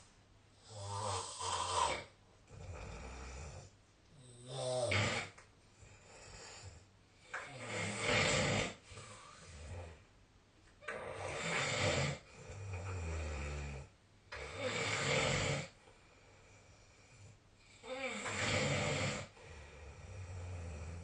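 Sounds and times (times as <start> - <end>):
person snoring: 0.6 - 5.4, 7.3 - 10.0, 10.9 - 15.8, 17.8 - 21.0.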